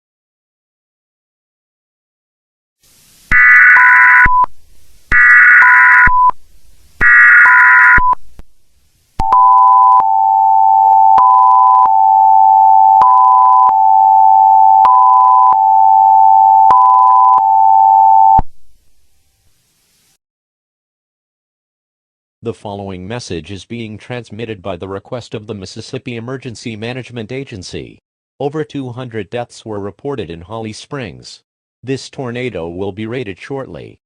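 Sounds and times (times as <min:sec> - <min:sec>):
higher repeating beep: 0:03.3 - 0:04.5, 0:05.1 - 0:06.4, 0:07.0 - 0:08.2
two-tone alert tone: 0:07.0 - 0:08.2.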